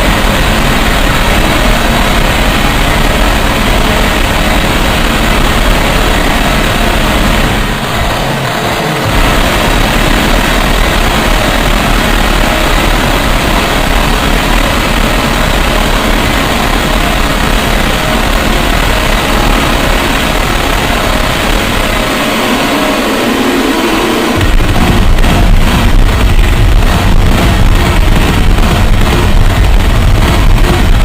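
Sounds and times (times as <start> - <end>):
dense wall of noise: 0.0 - 31.0.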